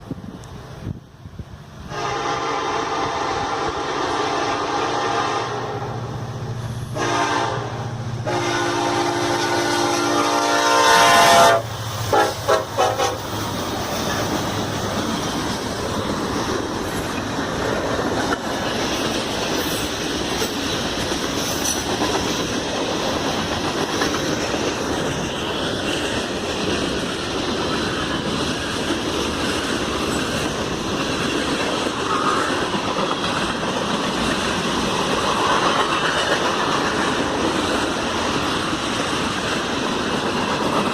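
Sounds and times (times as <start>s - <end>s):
train rumble: 0.0s - 40.9s
diesel locomotive horn: 1.9s - 6.2s, 6.8s - 13.4s.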